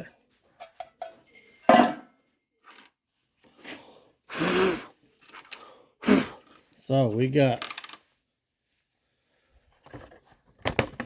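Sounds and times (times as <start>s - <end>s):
person breathing sharply: 3.6s - 6.6s.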